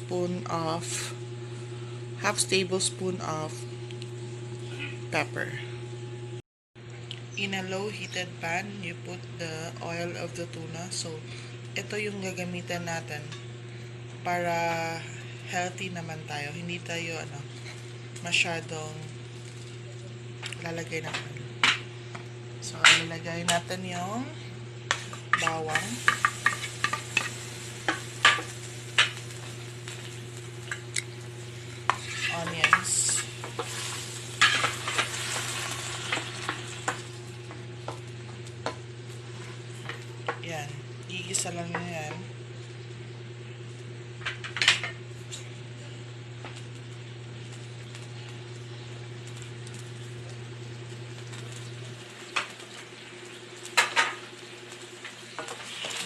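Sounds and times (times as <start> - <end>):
steady low hum: 0.0 - 55.6
garlic sizzling in oil: 7.6 - 56.0
utensil scraping against pan: 31.9 - 37.0.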